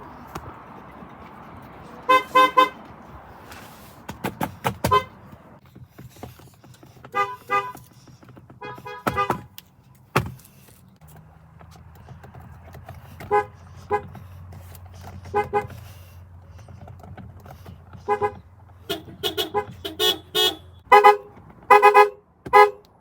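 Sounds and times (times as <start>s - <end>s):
car horns beeping: 0.0s - 5.6s, 6.9s - 9.6s, 13.1s - 14.2s, 15.0s - 16.0s, 17.9s - 23.0s.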